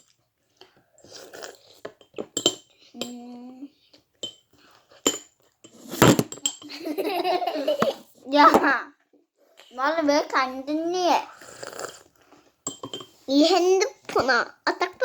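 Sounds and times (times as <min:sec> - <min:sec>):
spoon clinking against bowl: 0:02.0 - 0:03.2, 0:04.2 - 0:04.4, 0:05.0 - 0:06.7, 0:12.7 - 0:13.2.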